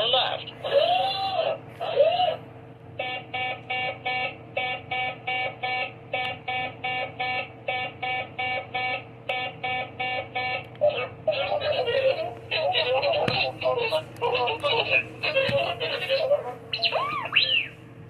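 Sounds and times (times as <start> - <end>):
toy robot beeping: 16.0 - 17.8.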